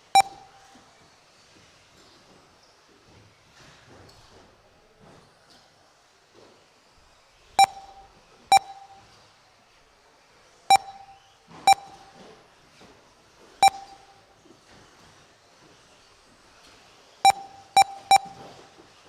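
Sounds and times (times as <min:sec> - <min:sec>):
short electronic beeps: 0:00.0 - 0:00.6, 0:07.6 - 0:09.1, 0:10.7 - 0:12.2, 0:13.6 - 0:14.3, 0:17.2 - 0:18.6.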